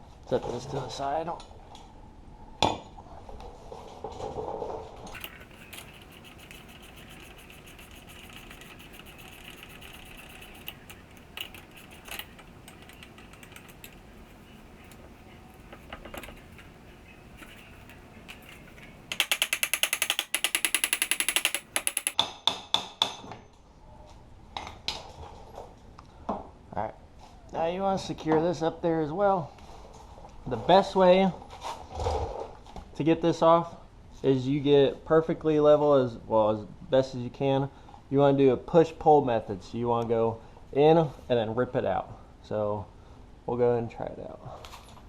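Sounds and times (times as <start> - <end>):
ratchet clicking: 5.2 - 22.2.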